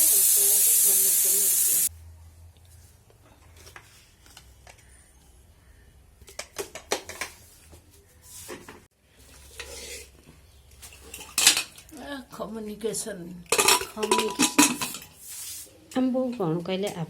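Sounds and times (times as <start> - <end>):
sharp clatter of utensils: 10.8 - 11.9, 13.5 - 15.2
utensils clinking against pots: 10.8 - 11.9, 13.4 - 15.2.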